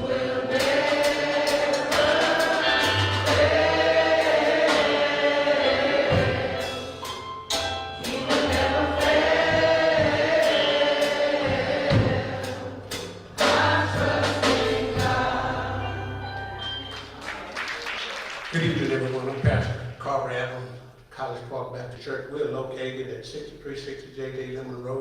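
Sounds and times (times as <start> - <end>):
band with bass and drums: 0.0 - 5.1, 6.1 - 17.2
gospel choir singing: 0.0 - 17.5.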